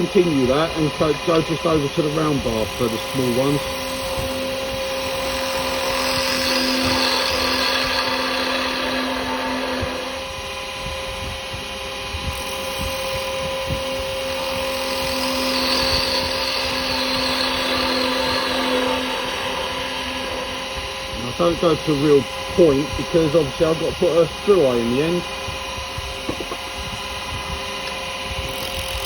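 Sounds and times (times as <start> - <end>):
chisel cutting wood hiss: 0.0 - 10.2, 12.3 - 25.2
lathe motor hum: 0.0 - 29.0.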